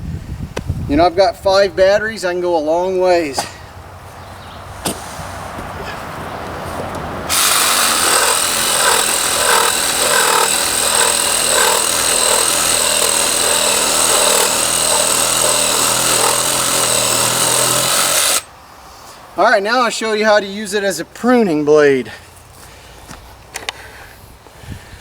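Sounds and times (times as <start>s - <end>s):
reciprocating saw cutting wood: 7.3s - 18.5s.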